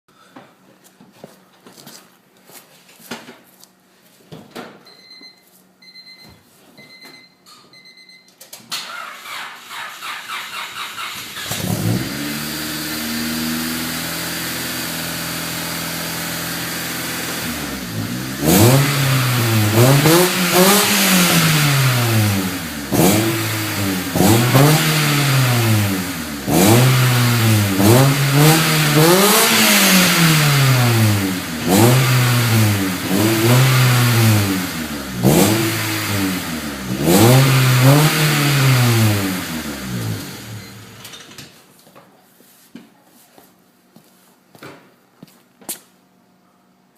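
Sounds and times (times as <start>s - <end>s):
short beeps: 4.9s - 8.4s
car engine cranking: 8.8s - 41.4s
car engine revving: 10.8s - 41.0s.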